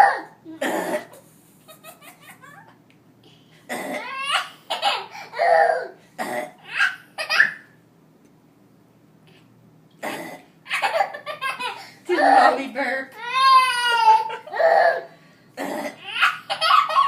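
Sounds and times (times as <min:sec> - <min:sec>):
baby laughing: 0:01.7 - 0:02.8, 0:04.0 - 0:05.9, 0:06.6 - 0:07.7, 0:10.7 - 0:12.6, 0:13.2 - 0:15.0, 0:16.0 - 0:17.0.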